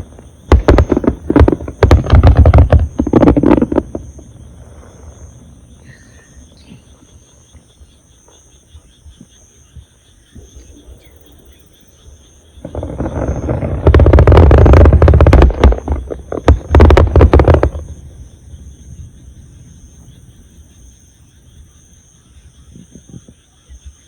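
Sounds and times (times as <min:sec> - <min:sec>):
distorted rumbling and crackling: 0:00.0 - 0:06.9, 0:12.6 - 0:20.2
insects chirping: 0:00.0 - 0:24.0.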